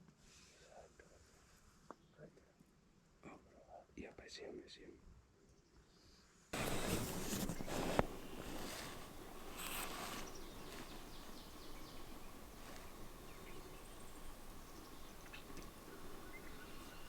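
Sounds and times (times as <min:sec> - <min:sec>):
steady background hiss: 0:00.0 - 0:17.0
faint bird chirps: 0:05.4 - 0:17.0.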